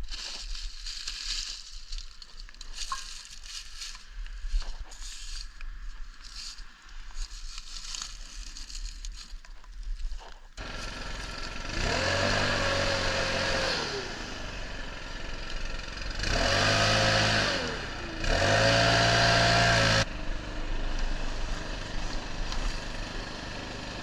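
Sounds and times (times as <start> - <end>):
leaf blower engine revving: 10.6 - 24.0.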